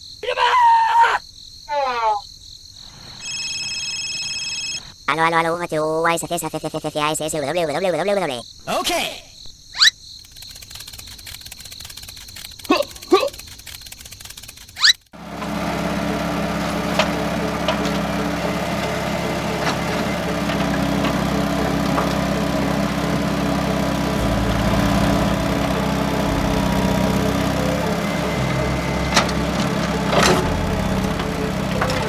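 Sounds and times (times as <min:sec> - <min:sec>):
small engine humming: 0:10.5 - 0:32.0
clicks and knocks: 0:16.4 - 0:32.0.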